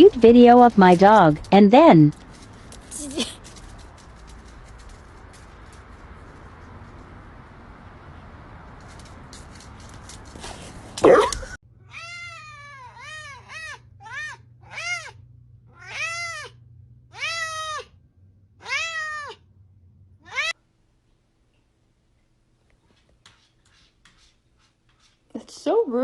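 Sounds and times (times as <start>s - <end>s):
cat meowing: 11.9s - 17.9s, 18.6s - 19.4s, 20.2s - 20.6s.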